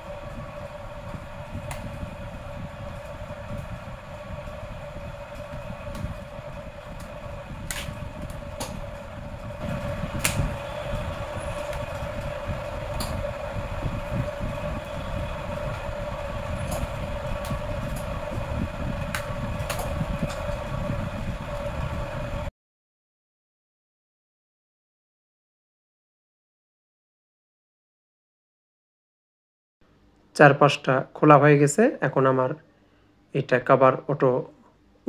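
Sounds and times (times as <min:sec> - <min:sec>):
low rumble and hum: 0:00.0 - 0:22.5.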